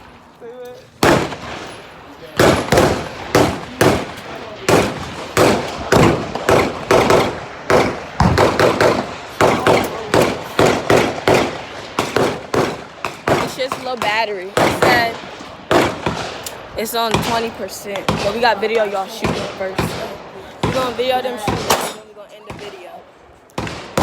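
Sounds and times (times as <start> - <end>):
gunshots with echo: 1.0 - 22.9, 23.6 - 24.0.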